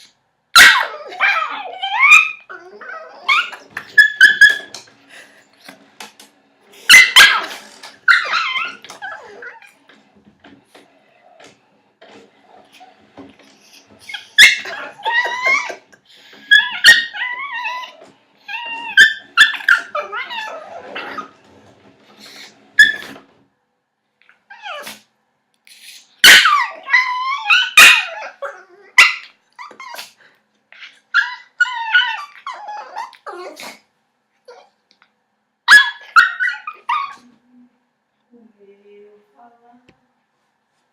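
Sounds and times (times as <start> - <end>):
puppy yipping and whining: 0.6 - 4.8, 6.9 - 9.8, 13.6 - 21.4, 22.4 - 23.2, 24.5 - 25.0, 26.0 - 30.2, 30.8 - 33.7, 35.7 - 37.3.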